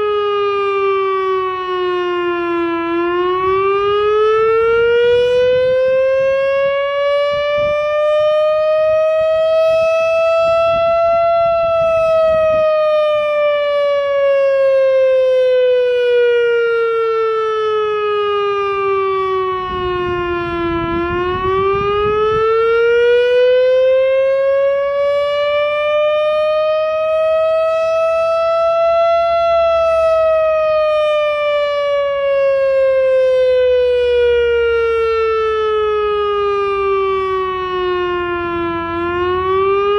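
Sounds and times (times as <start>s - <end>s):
warning siren slow wail: 0.0s - 39.9s.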